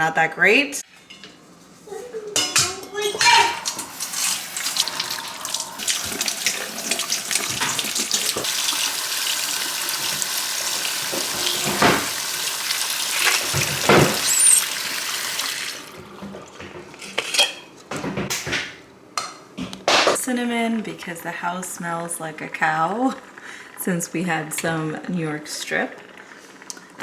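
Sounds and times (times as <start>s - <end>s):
tap running into a sink: 3.6s - 14.9s.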